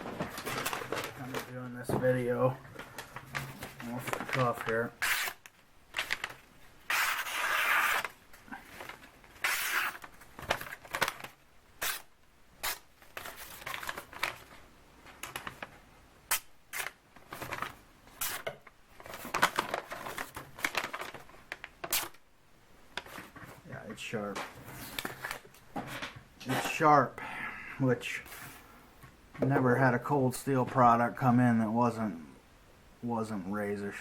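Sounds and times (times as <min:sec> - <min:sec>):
blade slicing paper: 0:05.0 - 0:05.5, 0:06.9 - 0:08.2, 0:09.4 - 0:10.1.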